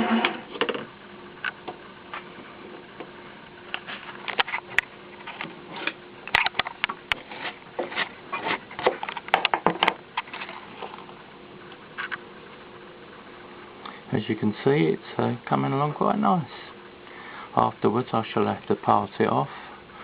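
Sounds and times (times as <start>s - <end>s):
milling motor humming: 0.0s - 20.0s
sharp clicks and knocks: 4.3s - 10.5s.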